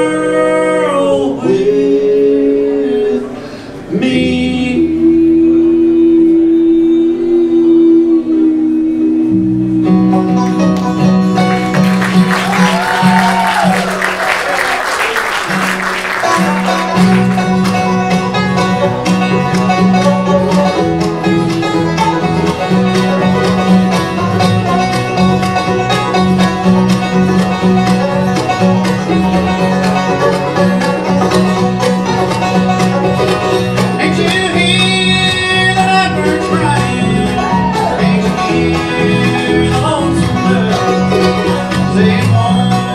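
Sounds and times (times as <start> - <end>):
guitar picking: 0.0 - 42.9
steady bass: 4.0 - 14.2, 15.5 - 42.9
banjo picking: 9.1 - 14.4, 15.4 - 42.9.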